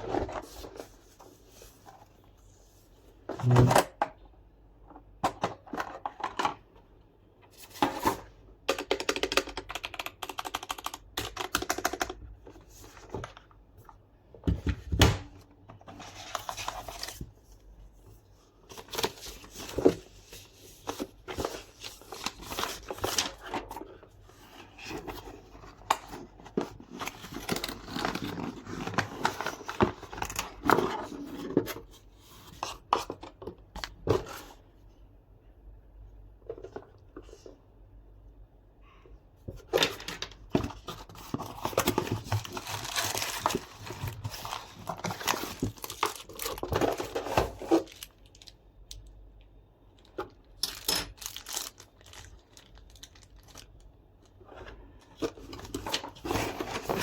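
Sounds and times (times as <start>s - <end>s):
packaging rustling and tearing: 24.8s - 31.6s, 39.8s - 48.6s, 50.1s - 53.9s, 55.2s - 57.0s.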